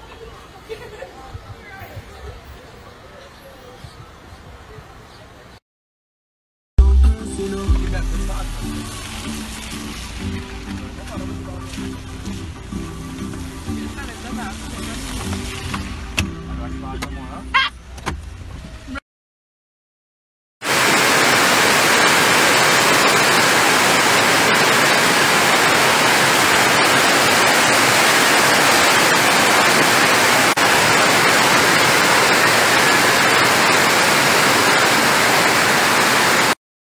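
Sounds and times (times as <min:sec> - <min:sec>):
static hiss: 0:20.7 - 0:36.6.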